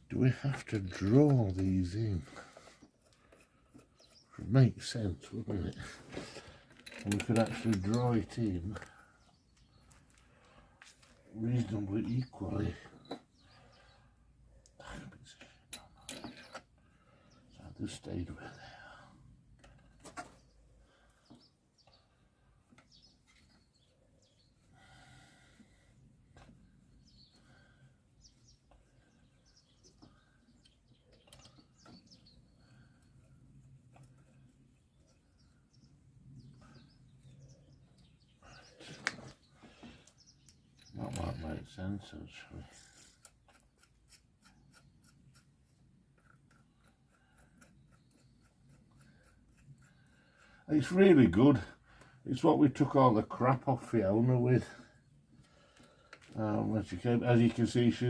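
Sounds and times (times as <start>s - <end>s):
faint light ticks and rubs: 2.4s - 4.5s, 33.0s - 35.6s
faint bird chirps: 20.1s - 25.9s, 26.6s - 33.4s, 34.0s - 41.9s.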